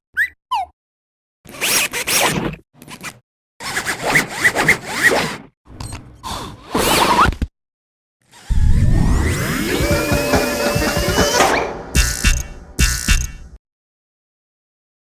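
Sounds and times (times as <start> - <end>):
sliding pitch glides: 8.4 - 12.0.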